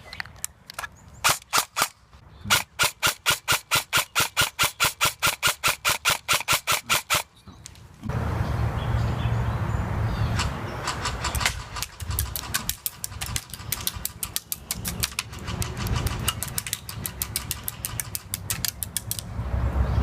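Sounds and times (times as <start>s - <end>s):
airsoft gun rapid shots: 2.5s - 7.3s.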